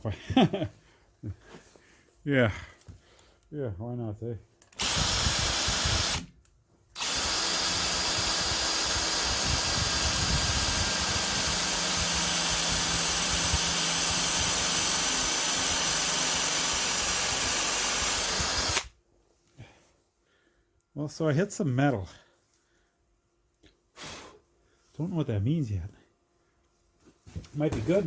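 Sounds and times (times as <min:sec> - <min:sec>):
electric drill drilling: 0:04.7 - 0:06.3, 0:07.0 - 0:18.9.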